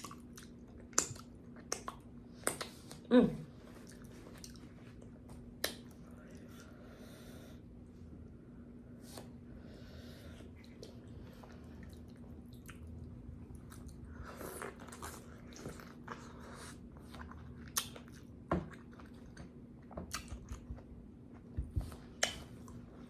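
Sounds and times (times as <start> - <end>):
chewing and mouth smacking: 0.0 - 3.0, 3.8 - 6.4, 10.6 - 23.0.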